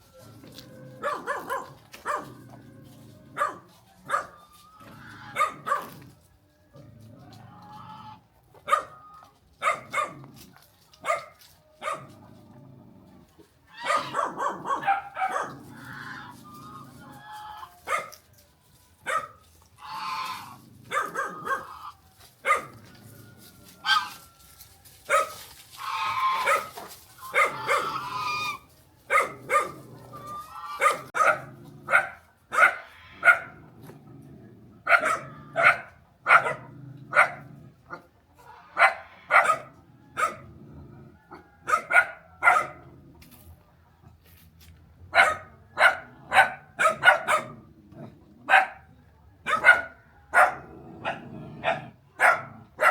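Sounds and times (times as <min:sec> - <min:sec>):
dog barking: 0:00.9 - 0:02.4, 0:03.3 - 0:04.4, 0:05.2 - 0:06.0, 0:08.6 - 0:10.3, 0:11.0 - 0:12.2, 0:13.8 - 0:15.8, 0:17.8 - 0:18.2, 0:19.0 - 0:19.4, 0:20.8 - 0:22.9, 0:25.1 - 0:25.4, 0:26.2 - 0:28.2, 0:29.1 - 0:29.9, 0:30.6 - 0:33.6, 0:34.8 - 0:40.5, 0:41.3 - 0:42.9, 0:45.1 - 0:47.7, 0:48.5 - 0:52.9.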